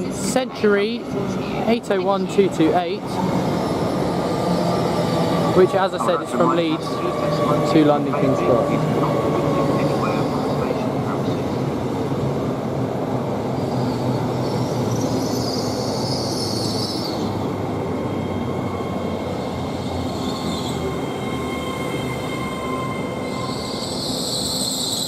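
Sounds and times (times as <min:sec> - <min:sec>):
electric train rumbling: 0:00.0 - 0:25.0
train brakes squealing: 0:13.6 - 0:17.4, 0:18.1 - 0:25.0.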